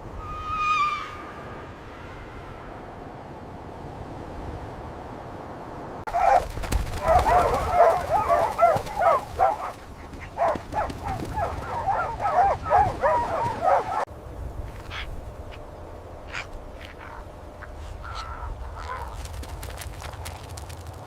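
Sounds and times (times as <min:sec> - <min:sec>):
short high animal calls: 0:16.3 - 0:19.2.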